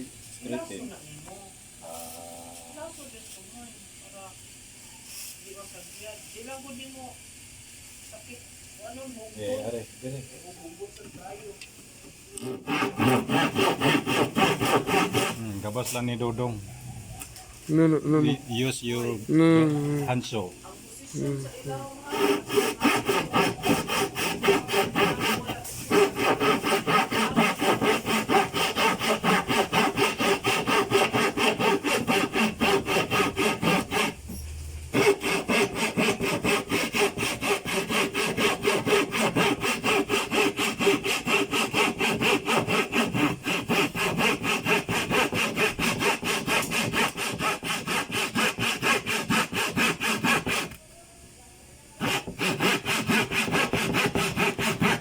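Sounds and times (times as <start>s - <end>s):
handsaw sawing: 12.4s - 16.5s, 21.7s - 34.2s, 34.9s - 50.8s, 52.0s - 55.0s.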